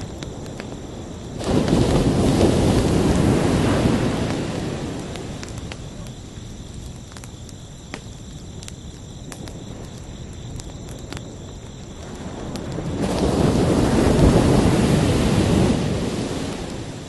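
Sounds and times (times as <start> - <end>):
crickets chirping: 0.0 - 17.0
ocean surf: 1.4 - 5.5, 13.0 - 17.0.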